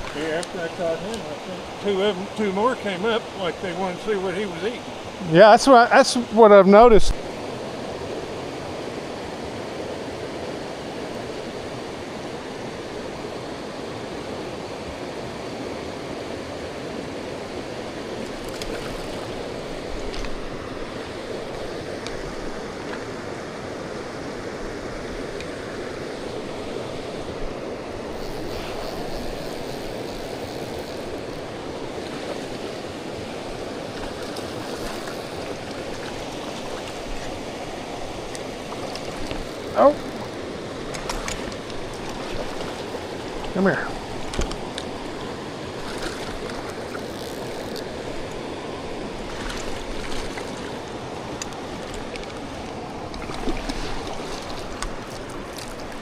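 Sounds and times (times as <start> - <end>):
stream rushing: 0.0 - 56.0.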